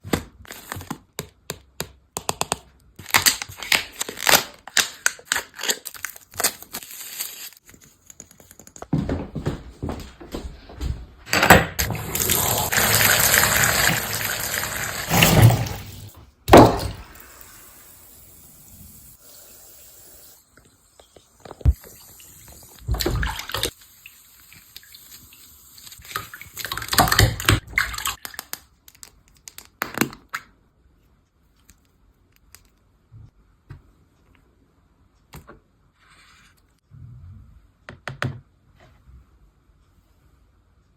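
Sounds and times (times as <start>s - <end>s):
packaging crinkling and clicks: 3.0s - 8.8s
rustling packaging: 3.0s - 8.8s.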